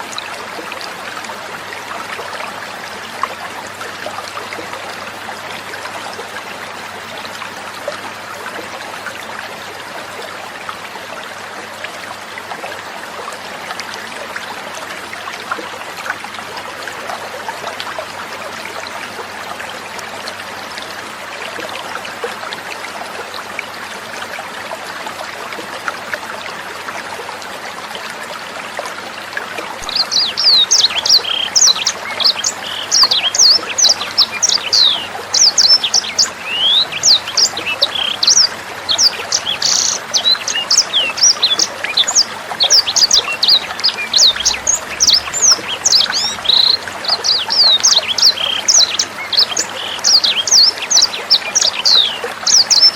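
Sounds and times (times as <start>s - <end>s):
water trickling: 0.0s - 52.9s
bird singing: 29.8s - 52.9s.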